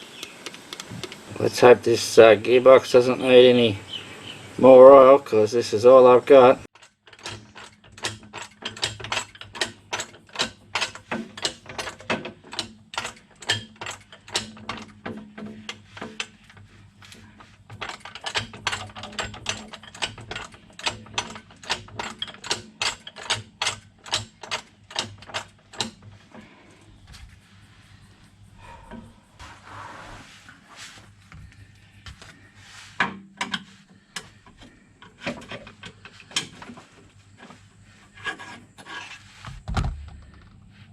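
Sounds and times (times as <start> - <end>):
oil can pump clicking: 6.8 - 26.4.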